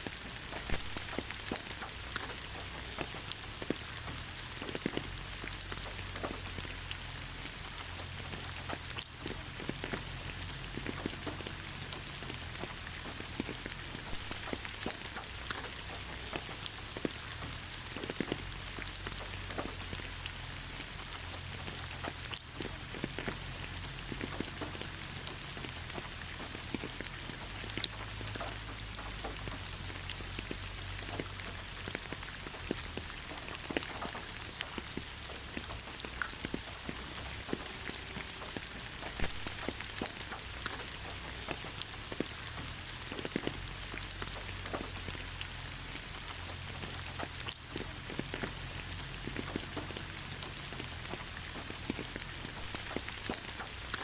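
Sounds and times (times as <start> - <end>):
raindrops ticking: 0.0 - 54.0
steady rainfall: 0.0 - 54.0.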